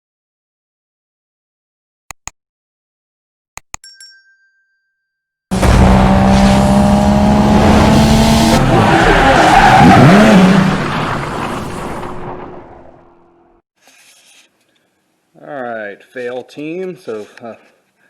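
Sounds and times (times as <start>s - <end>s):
car engine: 5.5s - 13.6s.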